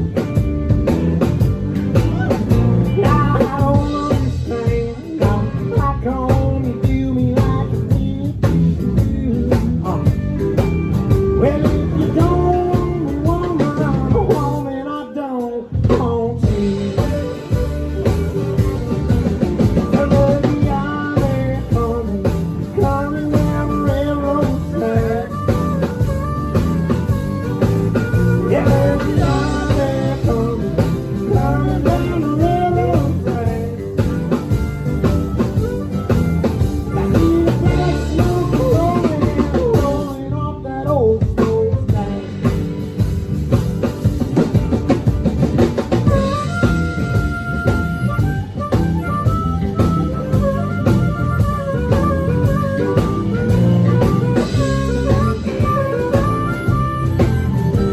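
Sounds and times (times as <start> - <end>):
drum kit steady beat: 0.0 - 40.3, 40.9 - 57.9
country band playing blues: 0.0 - 57.9
bending sliding guitar lines: 16.6 - 40.3, 42.3 - 57.9.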